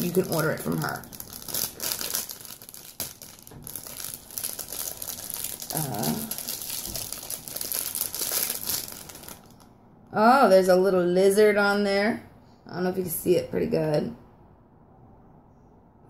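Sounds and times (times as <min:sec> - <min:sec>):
packaging wrap crinkling: 0:00.0 - 0:09.7.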